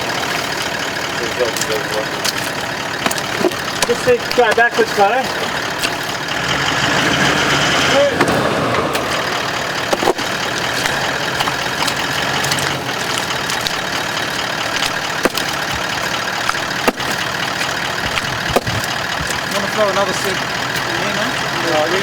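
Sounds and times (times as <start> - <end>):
vehicle engine running: 0.0 - 22.0
sharp knocks: 9.8 - 19.7.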